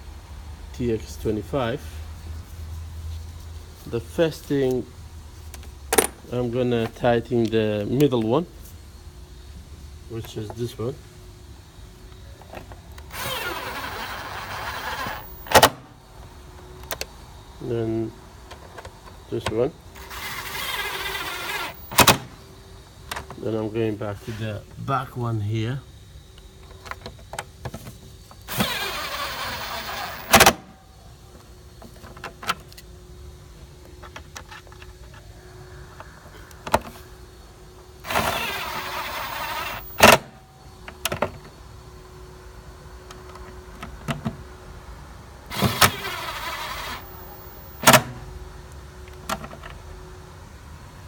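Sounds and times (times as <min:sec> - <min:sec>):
screws and plastic clicking: 0:12.9 - 0:15.8, 0:20.0 - 0:22.3, 0:28.5 - 0:30.6, 0:38.1 - 0:40.3
cordless screwdriver whirring: 0:13.1 - 0:15.8, 0:20.0 - 0:22.3, 0:28.5 - 0:30.6, 0:38.0 - 0:40.3, 0:45.5 - 0:48.1.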